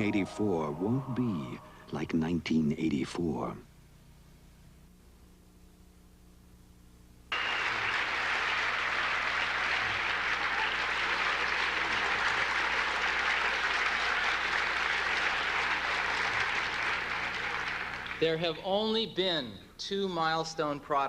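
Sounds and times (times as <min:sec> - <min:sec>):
large audience applauding: 0:07.3 - 0:18.5.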